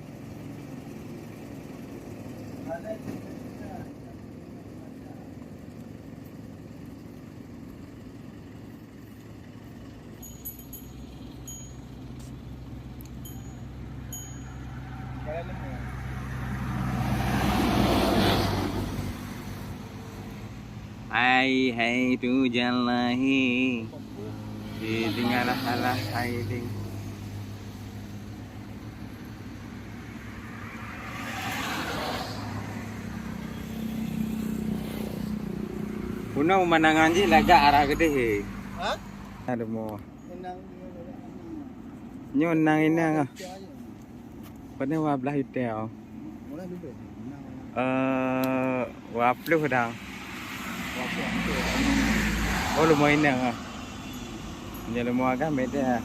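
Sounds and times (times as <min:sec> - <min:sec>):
vehicle engine running: 0:00.0 - 0:17.2, 0:18.6 - 0:31.0
light chime-like clinks: 0:10.1 - 0:12.4, 0:13.0 - 0:14.9.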